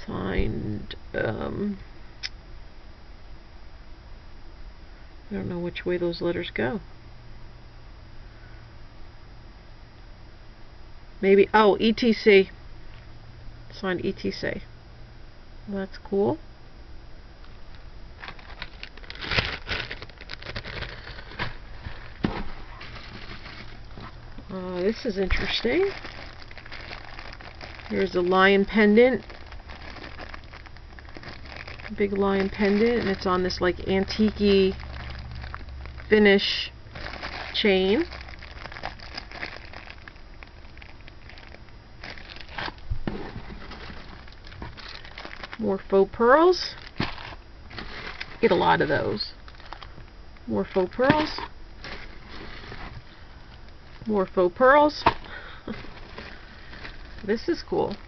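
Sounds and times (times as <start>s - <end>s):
plastic bag crinkling: 18.2s - 58.0s.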